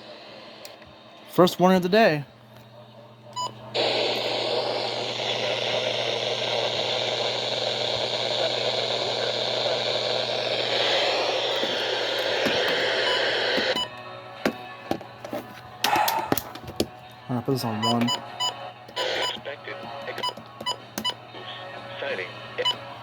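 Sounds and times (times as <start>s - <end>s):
radio static hiss: 3.2s - 13.8s, 19.0s - 20.5s, 21.4s - 23.0s.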